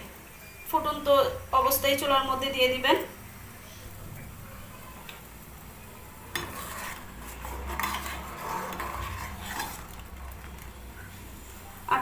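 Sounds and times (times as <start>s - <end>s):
spoon stirring in metal pot: 5.1s - 11.5s.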